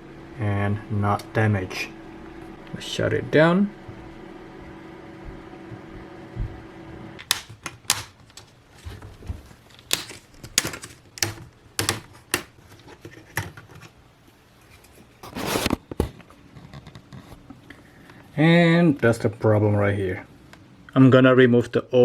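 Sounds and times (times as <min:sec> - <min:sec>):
laptop cooling fan hum: 0:00.0 - 0:22.0
clicks and knocks on plastic laptop: 0:09.9 - 0:13.8
scraping rustle: 0:14.6 - 0:17.5.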